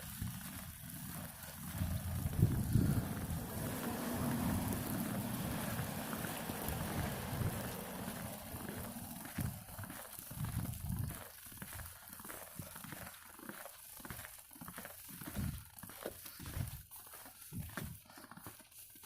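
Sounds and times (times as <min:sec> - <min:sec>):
wind rumble on microphone: 0:00.0 - 0:11.8, 0:15.3 - 0:15.6
footsteps crunching in snow: 0:00.0 - 0:19.0.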